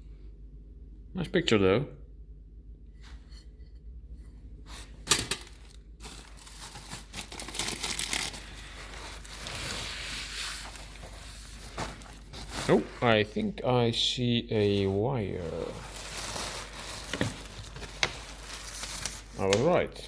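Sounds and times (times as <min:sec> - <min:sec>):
bags and packaging rustling: 0:04.7 - 0:13.6, 0:14.6 - 0:20.0.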